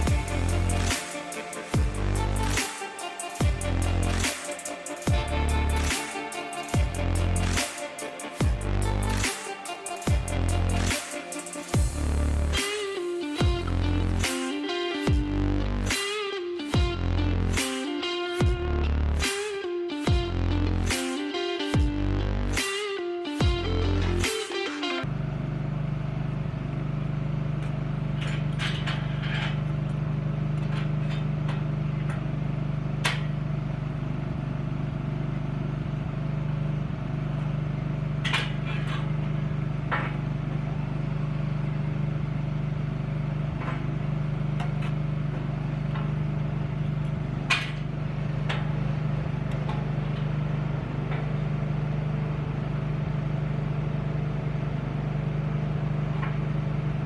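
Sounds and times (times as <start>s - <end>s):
welding generator engine running: 0.0s - 16.0s, 25.1s - 57.0s.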